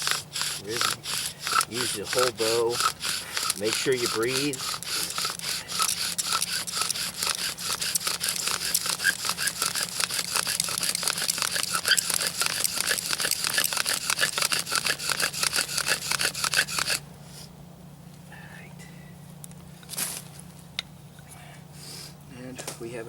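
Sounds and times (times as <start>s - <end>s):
wooden spindle grinding and squeaking: 0.0s - 17.0s.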